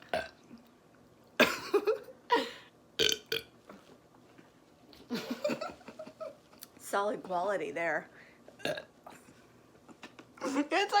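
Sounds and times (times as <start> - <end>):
person burping: 0.0 - 0.5, 3.0 - 3.4, 8.6 - 8.9.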